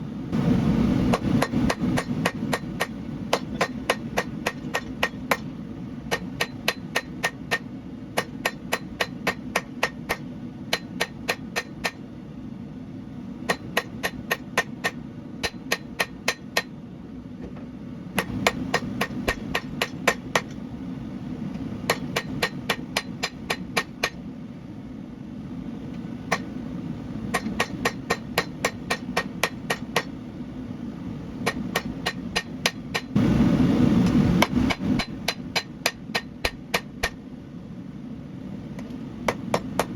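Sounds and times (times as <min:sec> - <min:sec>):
hammer striking steel on anvil: 0:01.1 - 0:05.5, 0:06.1 - 0:12.1, 0:13.4 - 0:16.7, 0:18.2 - 0:20.6, 0:21.9 - 0:24.2, 0:26.3 - 0:26.6, 0:27.3 - 0:30.2, 0:31.4 - 0:33.2, 0:34.4 - 0:37.2, 0:39.3 - 0:39.9.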